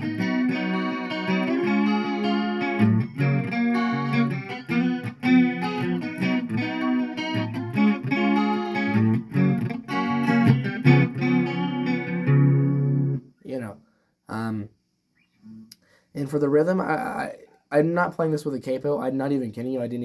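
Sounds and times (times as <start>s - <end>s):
electric guitar notes and chords: 0.0s - 13.2s.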